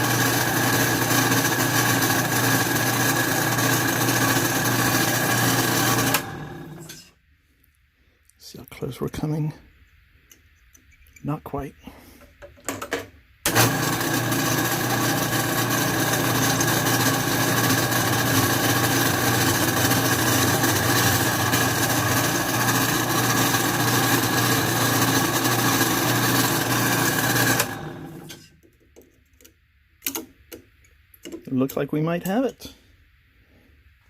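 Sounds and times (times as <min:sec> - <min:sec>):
metal lathe running: 0:00.0 - 0:07.0, 0:13.5 - 0:28.4.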